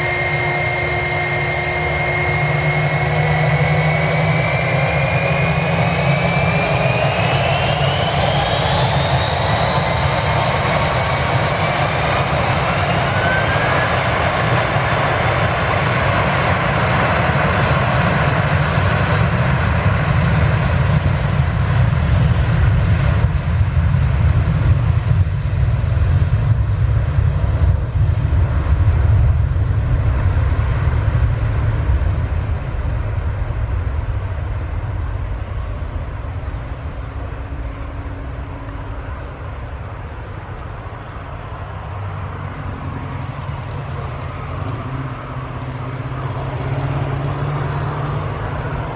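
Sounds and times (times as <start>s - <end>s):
jet engines whining and rumbling: 0.0s - 48.9s.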